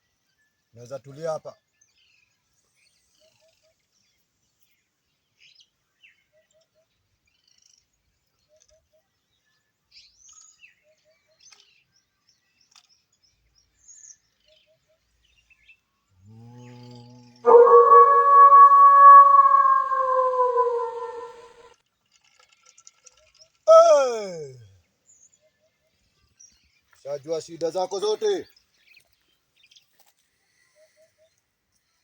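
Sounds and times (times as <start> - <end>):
bird chirps and whistles: 17.5 - 21.5
short three-note bird call: 17.5 - 21.5
low droning tone: 17.5 - 21.6.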